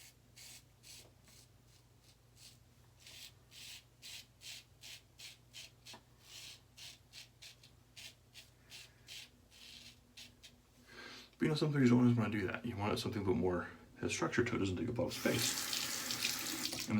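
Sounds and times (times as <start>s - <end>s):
razor scraping stubble: 0.0s - 10.6s.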